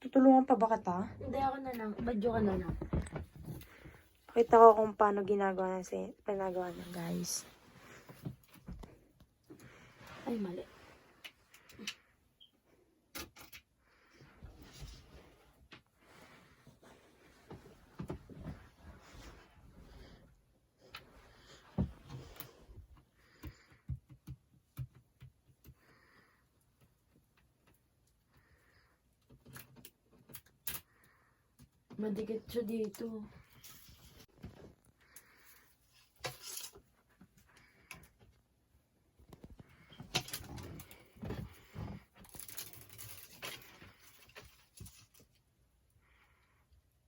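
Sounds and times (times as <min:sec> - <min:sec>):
plastic strip rustling and crinkling: 0:32.0 - 0:37.1, 0:39.2 - 0:45.4.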